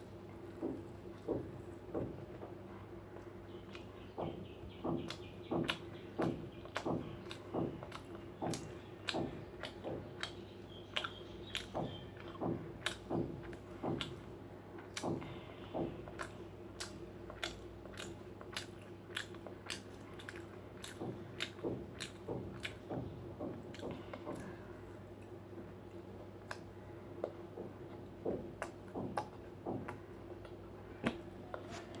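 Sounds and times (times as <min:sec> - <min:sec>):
close-up chewing with mouth smacks: 0:00.0 - 0:32.0
sharp clicks and taps: 0:03.7 - 0:10.4.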